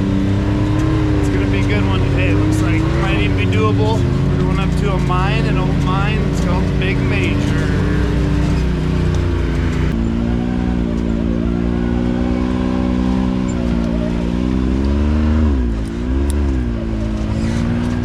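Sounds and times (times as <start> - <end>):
turbo engine under load: 0.0 - 18.0.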